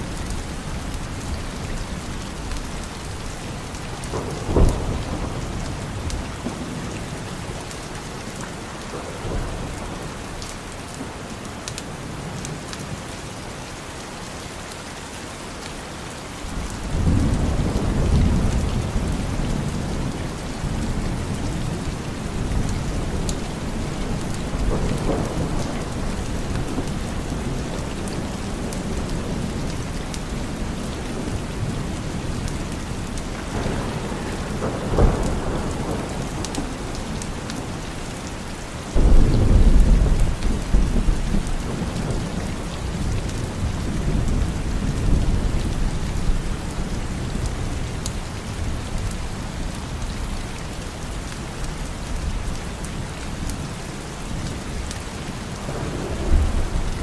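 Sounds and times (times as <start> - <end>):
thunder rumbling: 0.0 - 7.7, 16.5 - 50.4, 55.3 - 57.0
heavy rain: 0.0 - 57.0.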